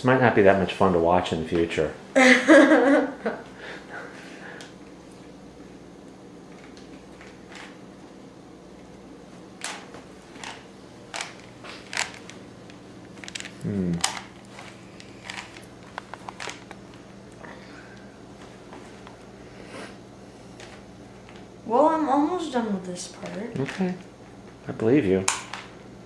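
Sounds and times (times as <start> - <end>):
steady low hum: 0.0 - 26.0
falling vocal sound: 13.6 - 14.0.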